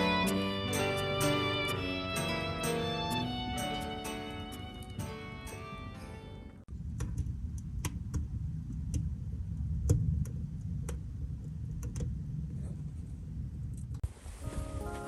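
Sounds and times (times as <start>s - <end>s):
background music: 0.0s - 6.6s, 14.4s - 15.0s
low steady rumble: 0.0s - 15.0s.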